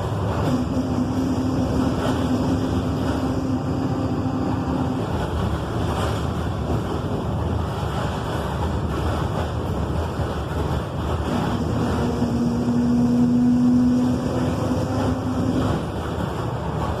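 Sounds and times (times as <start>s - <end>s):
diesel truck engine running: 0.0s - 17.0s
steady humming tone: 0.0s - 17.0s.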